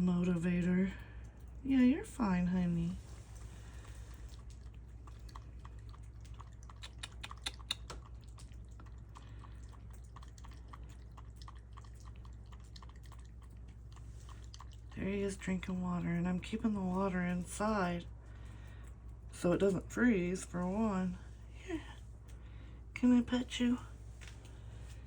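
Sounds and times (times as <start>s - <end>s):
cat lapping water: 0.0s - 19.4s.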